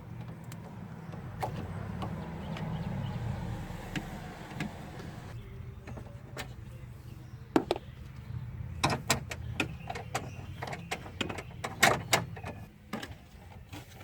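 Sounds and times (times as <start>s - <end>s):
sharp clicks and knocks of parts: 8.8s - 13.2s.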